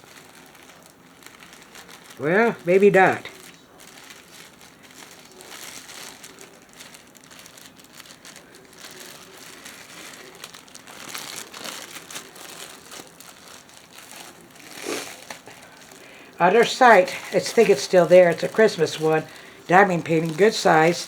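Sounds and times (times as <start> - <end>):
packaging crinkling: 0.0 - 21.0.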